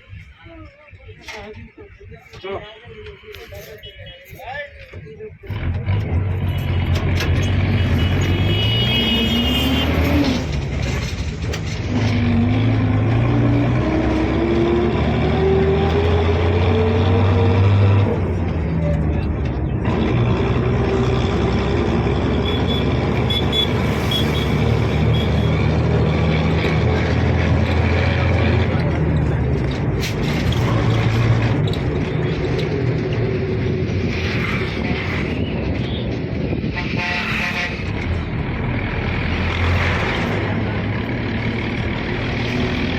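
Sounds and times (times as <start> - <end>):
vehicle engine humming: 5.5 - 42.9.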